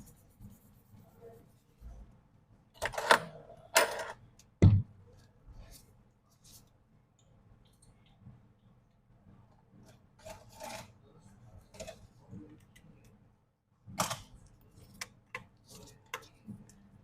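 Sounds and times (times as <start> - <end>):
tools rubbing and scraping: 9.9 - 11.0.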